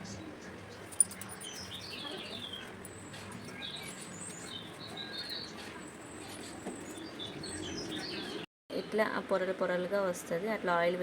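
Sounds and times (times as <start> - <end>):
birds chirping: 0.0 - 8.5.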